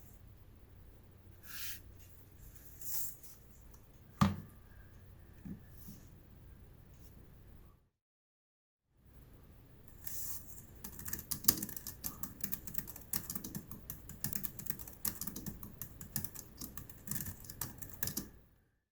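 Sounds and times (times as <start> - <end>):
soft rustle: 1.4 - 3.7.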